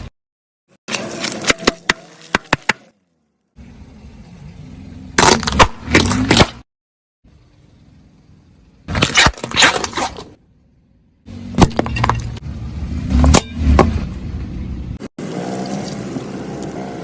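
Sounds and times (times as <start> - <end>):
objects cracking under car tyre: 5.2 - 6.6, 8.9 - 10.4.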